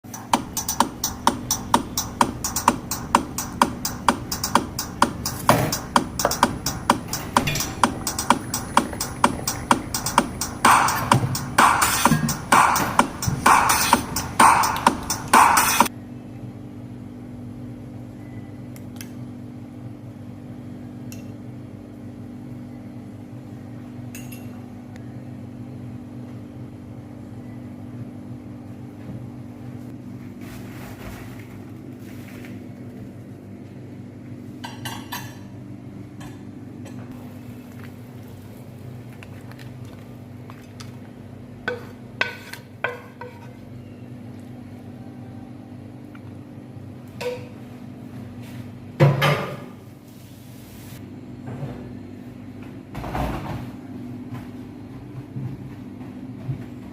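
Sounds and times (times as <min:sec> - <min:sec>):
steady low hum: 0:00.0 - 0:30.3
pots and utensils clinking: 0:05.3 - 0:13.8.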